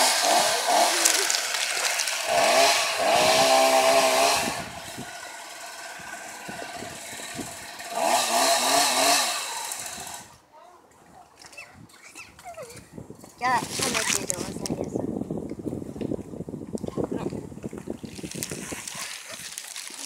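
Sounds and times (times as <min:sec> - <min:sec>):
chainsaw revving and idling: 0:00.0 - 0:10.3.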